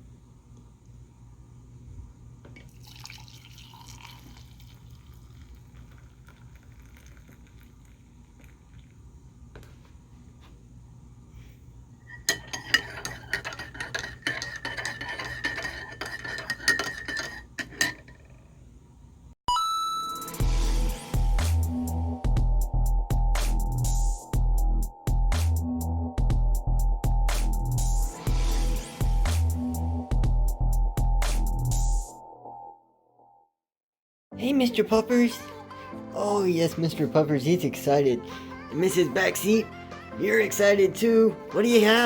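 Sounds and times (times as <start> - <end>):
dishes and cutlery clinking: 12.1 - 18.4.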